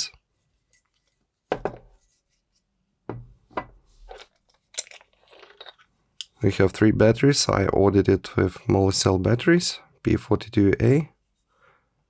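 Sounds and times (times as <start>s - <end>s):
knocks: 3.1s - 3.8s.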